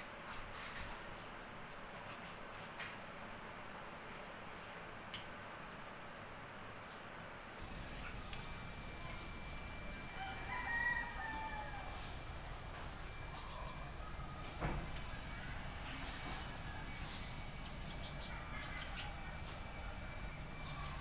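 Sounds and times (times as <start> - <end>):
rooster crowing: 8.3 - 15.8.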